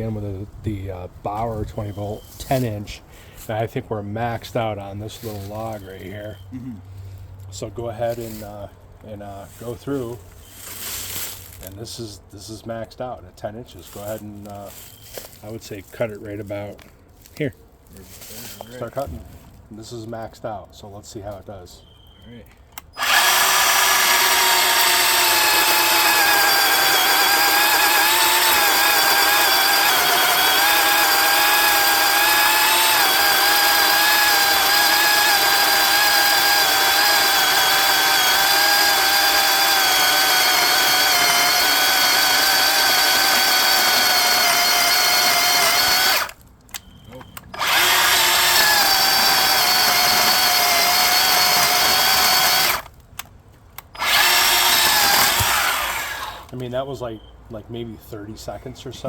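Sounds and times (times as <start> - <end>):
electric chainsaw cutting log: 23.0 - 46.4, 47.5 - 52.9, 53.8 - 56.6.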